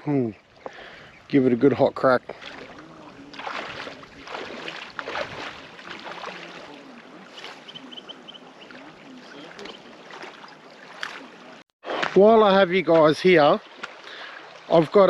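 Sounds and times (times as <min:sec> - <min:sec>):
water lapping at shore: 0:00.0 - 0:15.0.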